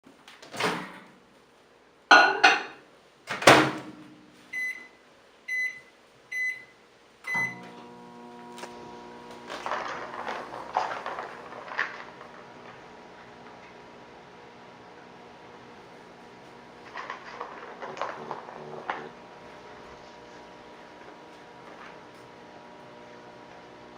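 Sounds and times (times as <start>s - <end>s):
microwave oven humming: 2.1s - 23.9s
microwave door slamming: 3.3s - 4.0s
short keypad beeps: 5.5s - 6.7s.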